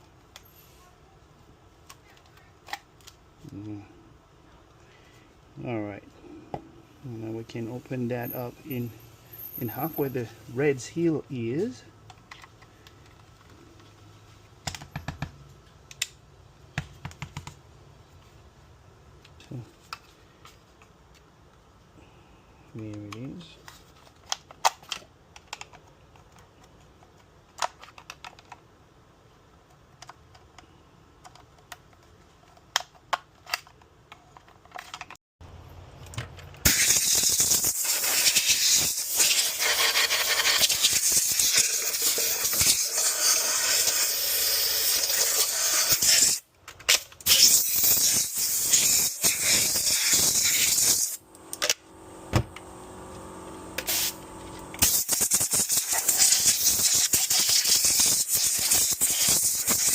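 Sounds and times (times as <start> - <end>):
plastic parts clicking and knocking: 12.0 - 13.9, 14.6 - 17.6, 22.9 - 28.7, 29.6 - 35.2, 46.5 - 47.4
compressed air blow gun hissing: 36.6 - 46.4, 47.2 - 51.2, 53.8 - 54.2, 54.8 - 59.9.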